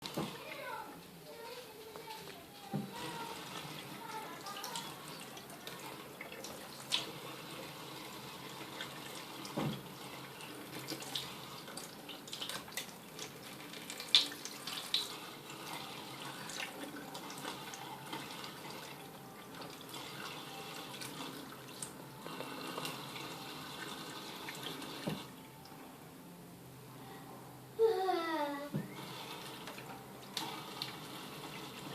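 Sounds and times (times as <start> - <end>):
tap running into sink: 8.8 - 10.0, 24.5 - 25.3.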